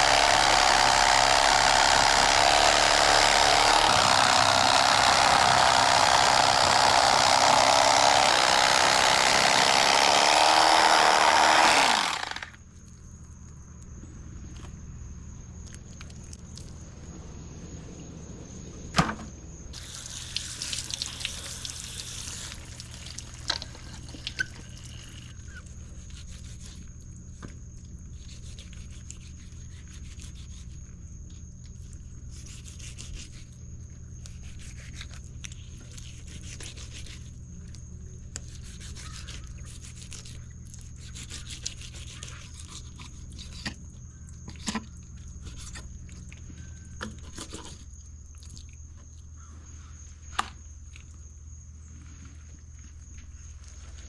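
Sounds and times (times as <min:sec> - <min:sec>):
running water: 0:19.8 - 0:24.8.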